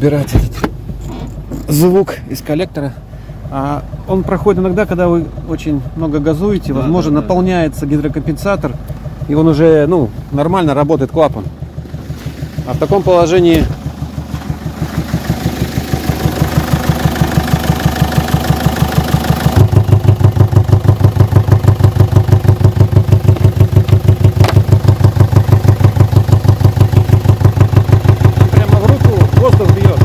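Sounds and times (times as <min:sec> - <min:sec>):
diesel engine idling: 0:00.0 - 0:30.0
rhythmic engine knock: 0:12.6 - 0:30.0.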